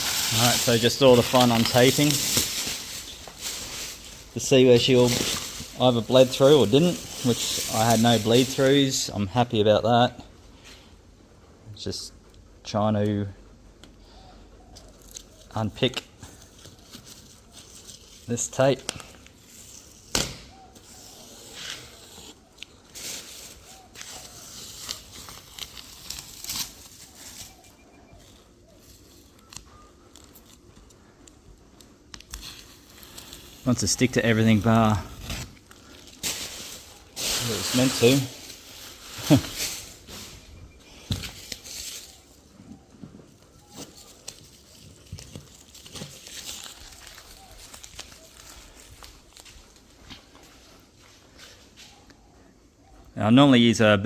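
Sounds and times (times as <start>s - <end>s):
masking tape peeling: 0.0s - 8.8s, 16.4s - 40.4s, 43.6s - 49.8s.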